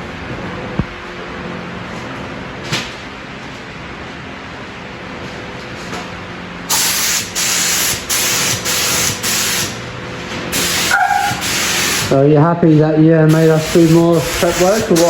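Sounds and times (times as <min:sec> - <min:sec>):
compressed air bursts: 0:06.7 - 0:09.8, 0:10.5 - 0:12.2, 0:13.2 - 0:15.0.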